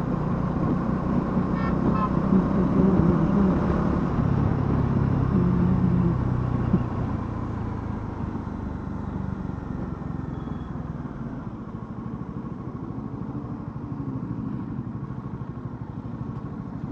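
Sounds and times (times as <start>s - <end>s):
motorcycle engine idling: 7.3s - 16.9s.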